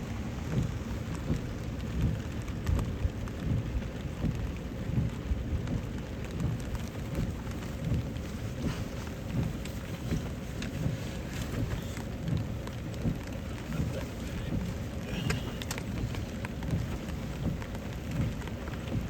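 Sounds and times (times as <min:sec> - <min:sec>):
low rumbling drumming: 0:00.0 - 0:19.0
rain on car roof: 0:00.0 - 0:19.0.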